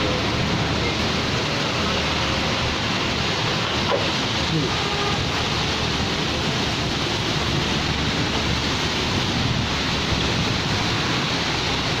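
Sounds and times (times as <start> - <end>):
heavy rain falling: 0.0 - 12.0
wind rumbling on microphone: 2.5 - 12.0.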